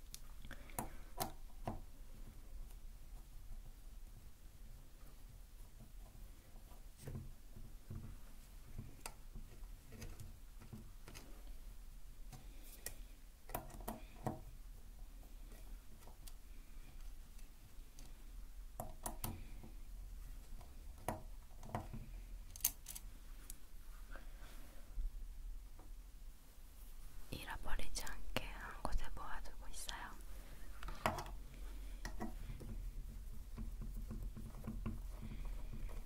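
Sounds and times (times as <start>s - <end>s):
small handling clicks: 22.5s - 23.6s.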